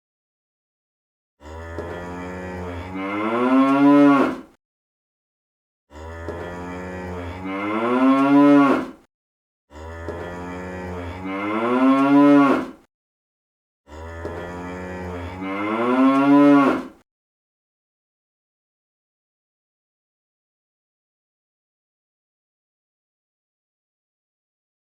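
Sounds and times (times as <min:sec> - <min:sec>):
rising moo-like call: 0:01.4 - 0:04.5, 0:05.9 - 0:09.0, 0:09.7 - 0:12.8, 0:13.9 - 0:17.0.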